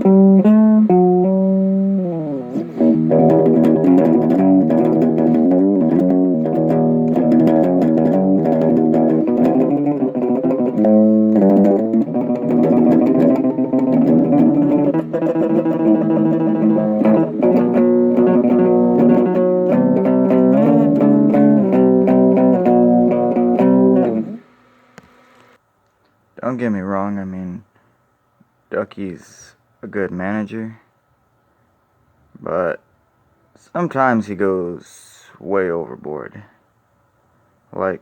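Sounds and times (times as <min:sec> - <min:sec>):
plucked guitar run: 0:00.0 - 0:25.6.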